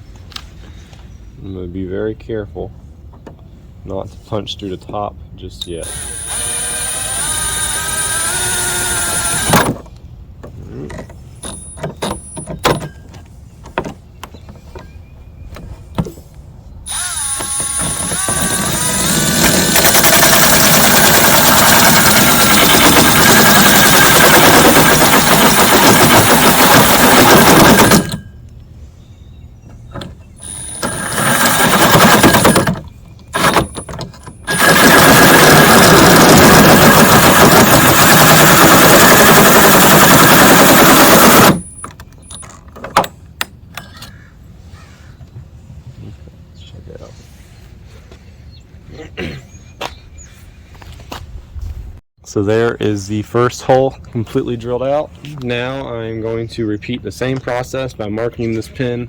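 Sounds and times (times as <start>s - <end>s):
drill grinding through metal: 5.8s - 9.8s, 16.9s - 28.2s, 30.4s - 32.8s, 33.4s - 41.8s.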